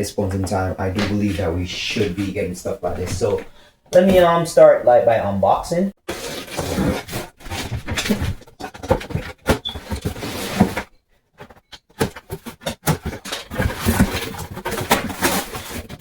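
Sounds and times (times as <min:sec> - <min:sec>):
cardboard box scraping and rustling: 0:06.1 - 0:10.9, 0:12.2 - 0:16.0.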